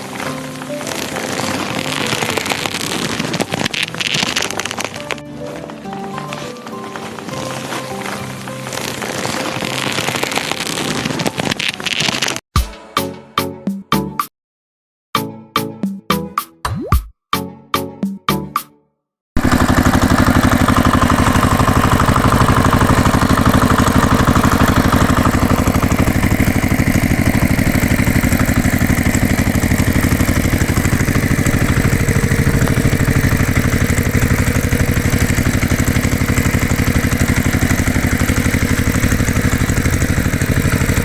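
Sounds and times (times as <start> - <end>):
tractor engine idling: 0.0 - 10.8, 19.4 - 41.0.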